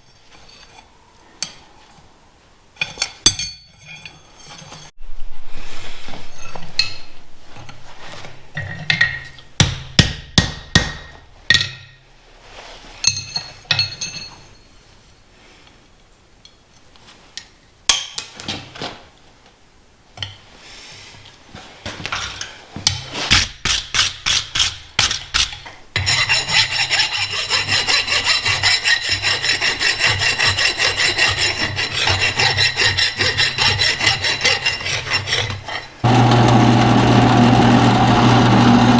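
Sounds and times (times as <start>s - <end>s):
scraping strokes on steel: 0.0s - 1.9s, 2.8s - 8.8s, 23.2s - 36.1s.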